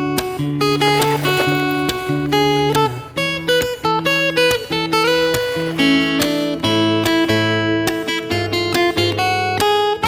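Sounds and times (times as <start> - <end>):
strummed acoustic guitar: 0.6 - 6.8.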